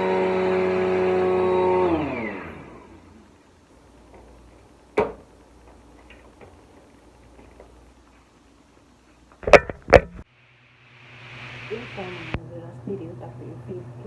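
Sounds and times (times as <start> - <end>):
vacuum cleaner motor spinning down: 0.0 - 3.4.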